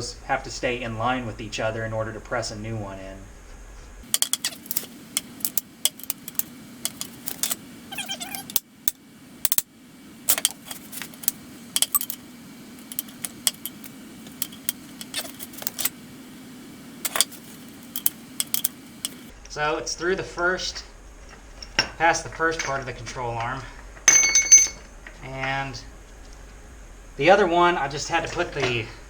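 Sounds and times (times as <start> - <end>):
steady low hum: 0.0 - 29.0
ratchet wrench clicking: 4.1 - 7.6, 8.4 - 9.7, 17.0 - 19.3.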